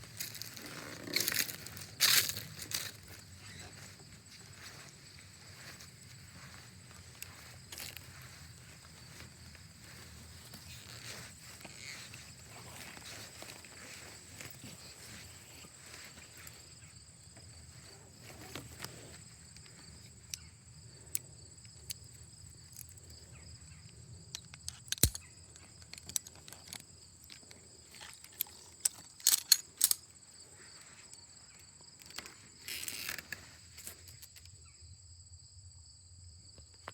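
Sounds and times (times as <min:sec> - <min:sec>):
insects chirping: 0:00.0 - 0:36.9
sharp clicks and knocks: 0:24.4 - 0:30.0.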